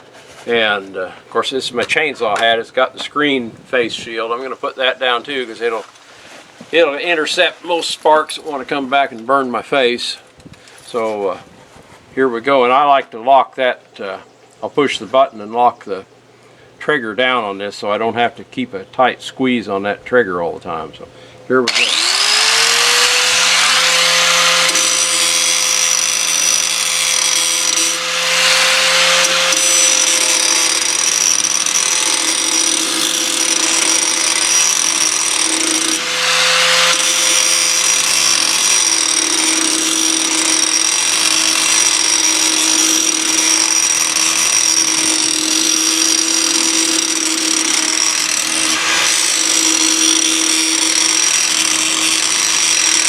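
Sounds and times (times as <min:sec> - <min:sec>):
angle grinder grinding metal: 0:21.6 - 0:53.0.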